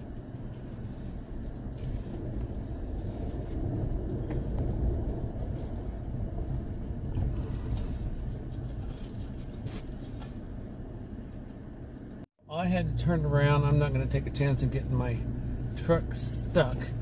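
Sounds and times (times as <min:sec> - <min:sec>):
truck engine and tyre rumble: 0:00.0 - 0:17.0.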